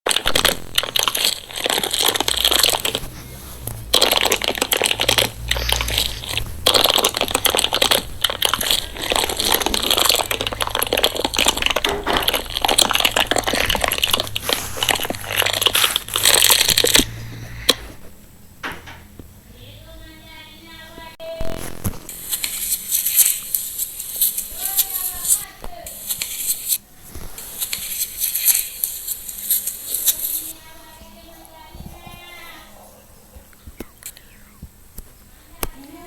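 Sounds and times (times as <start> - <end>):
slime squeezed by hand: 0.1 - 17.9.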